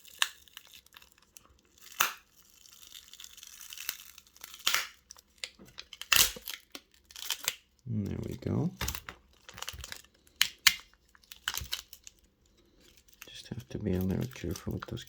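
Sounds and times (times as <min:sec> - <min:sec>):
adhesive crackling and tearing: 0:00.0 - 0:15.0
plastic card scraping: 0:03.8 - 0:15.0.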